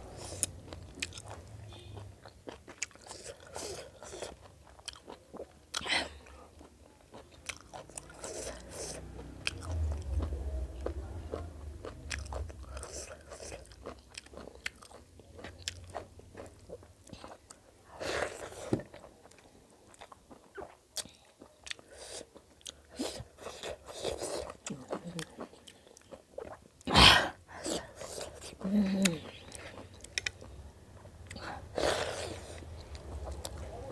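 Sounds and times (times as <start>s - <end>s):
person chewing crunchy food: 0.1s - 17.6s, 18.2s - 26.9s
low rumble: 9.1s - 13.9s.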